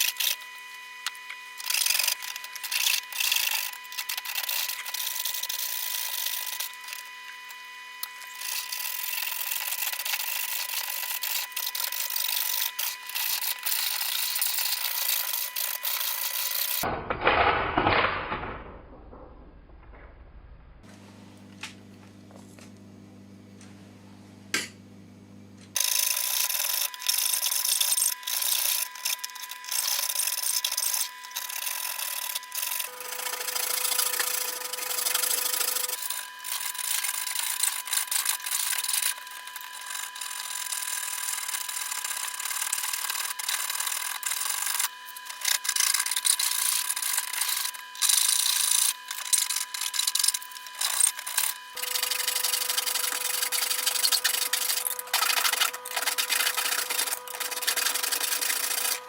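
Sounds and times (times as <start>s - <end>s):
file scraping on wood: 28.3s - 59.0s.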